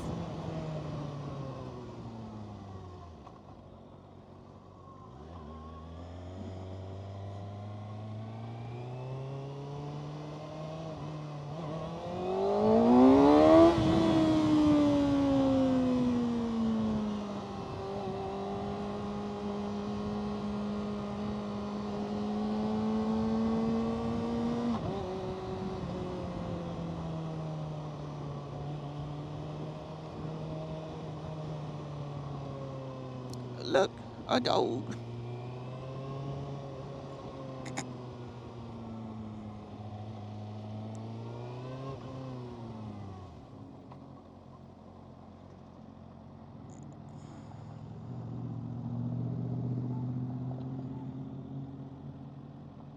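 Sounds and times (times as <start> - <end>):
motorcycle engine revving: 11.6 - 14.8.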